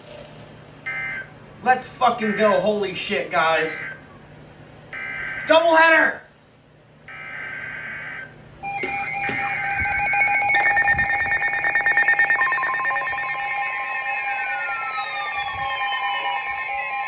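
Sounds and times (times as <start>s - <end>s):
steady attention tone: 0.9s - 4.2s, 7.1s - 17.0s
electronic alert tones: 8.6s - 17.0s
data burst: 8.7s - 17.0s.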